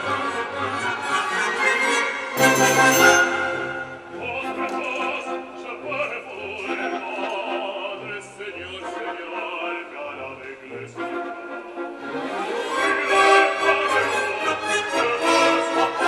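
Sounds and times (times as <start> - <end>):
orchestral accompaniment: 2.2 - 4.8
man singing opera: 4.0 - 12.0, 12.7 - 16.0.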